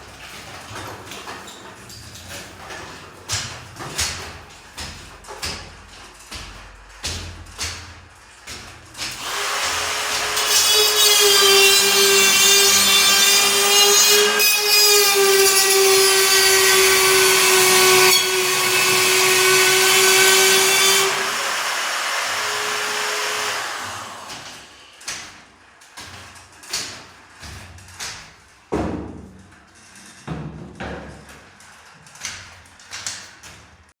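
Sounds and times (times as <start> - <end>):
power tool cutting drywall: 9.0 - 25.4.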